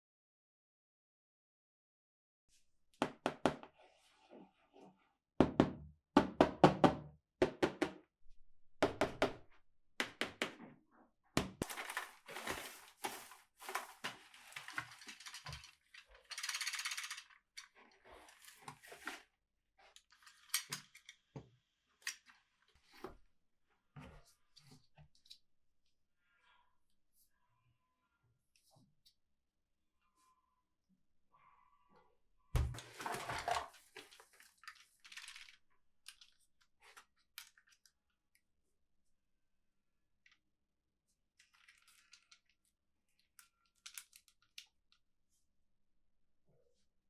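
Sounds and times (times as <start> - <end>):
packaging rustling: 11.6 - 15.9.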